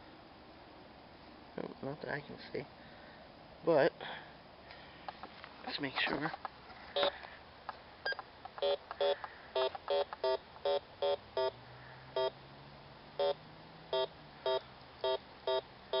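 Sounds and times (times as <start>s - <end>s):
metal detector beeps: 8.0s - 11.6s, 12.2s - 12.4s, 13.2s - 16.0s.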